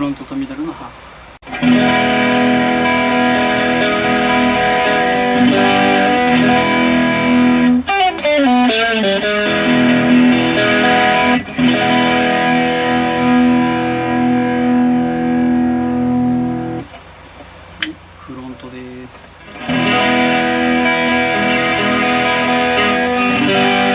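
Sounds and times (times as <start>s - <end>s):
overdriven electric guitar chords: 1.4s - 17.0s, 19.4s - 23.9s
bent guitar notes: 1.4s - 23.9s.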